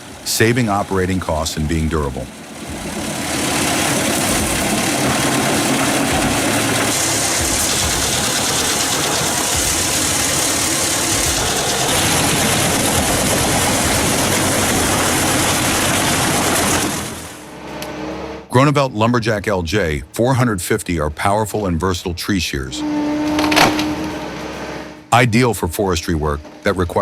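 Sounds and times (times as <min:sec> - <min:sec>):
wood chipper chipping wood: 0:02.3 - 0:17.9, 0:22.8 - 0:24.9.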